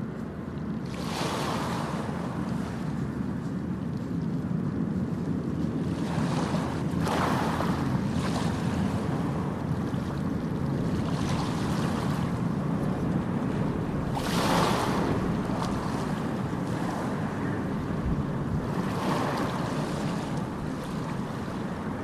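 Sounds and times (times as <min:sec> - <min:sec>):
ocean waves washing onto beach: 0:00.0 - 0:22.0
steady low rumble: 0:08.9 - 0:22.0.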